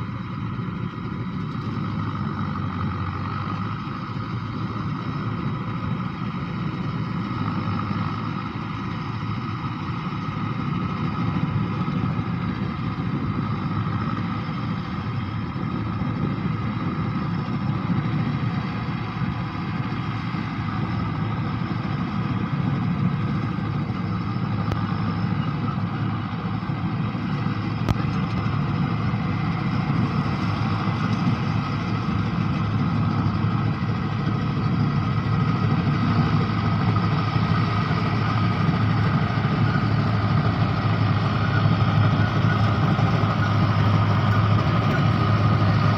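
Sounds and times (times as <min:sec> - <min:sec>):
combine harvester engine droning: 0:00.0 - 0:45.9.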